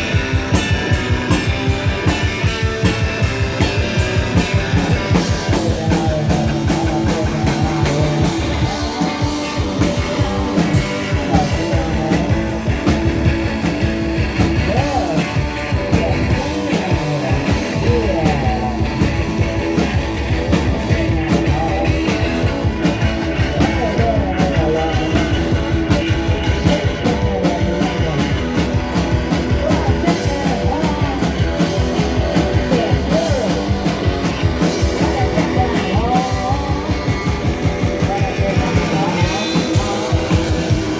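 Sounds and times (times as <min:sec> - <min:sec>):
drum-kit beat: 0:00.0 - 0:40.9
electric guitars: 0:00.0 - 0:40.9.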